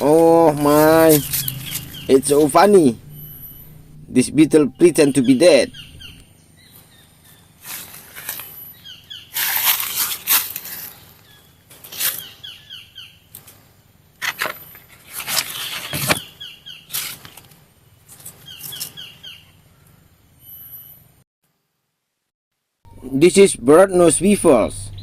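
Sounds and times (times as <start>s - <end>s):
songbird chirping: 0.0s - 9.6s, 10.6s - 13.6s, 14.4s - 21.2s
loud rustling: 0.6s - 4.1s, 7.5s - 12.3s, 14.2s - 16.3s.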